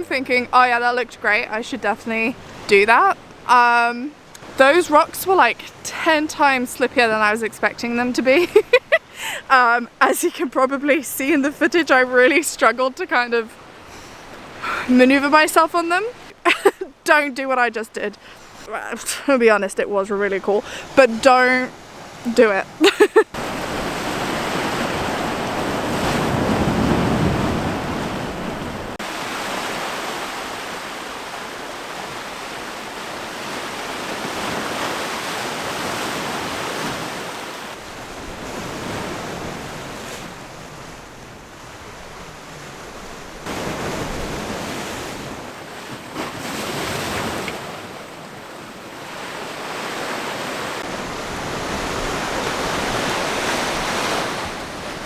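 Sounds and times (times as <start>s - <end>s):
ocean waves breaking: 0.0s - 55.0s
wind buffeting microphone: 23.3s - 29.6s.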